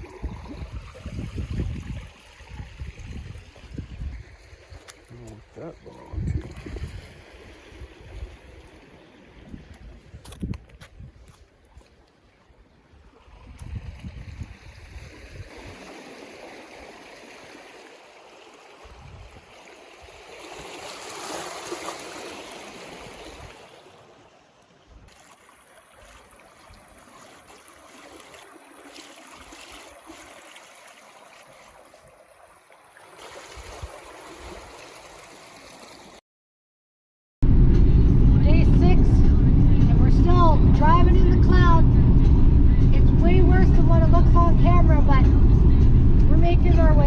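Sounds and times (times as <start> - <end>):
wind buffeting microphone: 0.0 - 11.5, 13.2 - 15.8, 18.8 - 20.2, 37.4 - 47.0
water washing at shoreline: 0.0 - 36.2.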